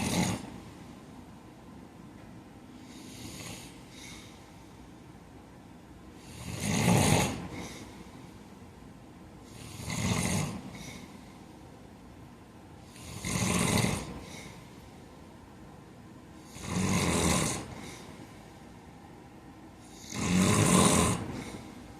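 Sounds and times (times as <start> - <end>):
man snoring: 0.0 - 0.6, 2.8 - 4.4, 6.2 - 7.9, 9.5 - 11.2, 12.9 - 14.6, 16.4 - 18.1, 19.8 - 21.8
soft breathing: 2.5 - 5.4, 7.3 - 11.9, 12.7 - 16.8, 17.5 - 21.9.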